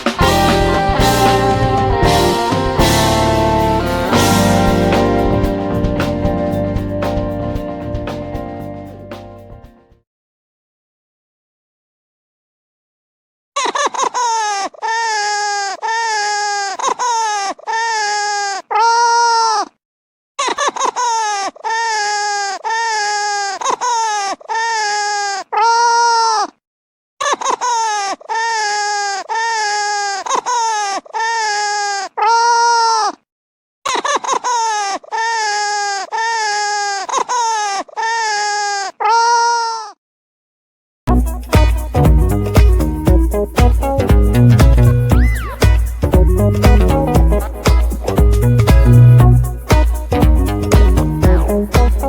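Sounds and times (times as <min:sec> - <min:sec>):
baby crying: 0:13.6 - 0:19.8, 0:20.4 - 0:26.6, 0:27.2 - 0:33.2, 0:33.9 - 0:40.0, 0:45.1 - 0:45.8.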